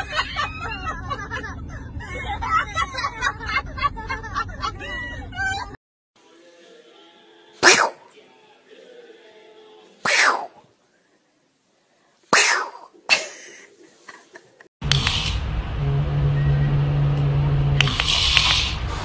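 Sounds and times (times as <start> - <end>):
pet sneezing: 7.6 - 8.1, 10.0 - 10.6, 12.3 - 13.3.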